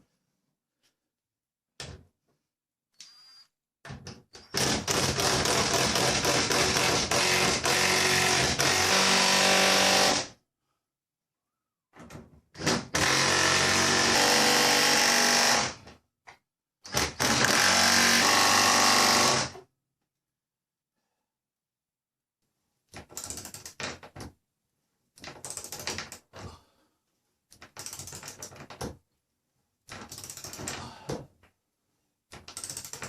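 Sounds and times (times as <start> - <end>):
power drill running: 4.6 - 10.3, 13.0 - 15.8, 16.9 - 19.5.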